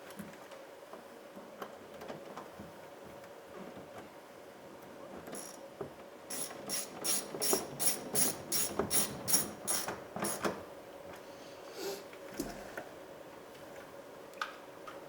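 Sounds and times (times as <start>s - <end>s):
hand ratchet clicking: 6.3s - 10.4s.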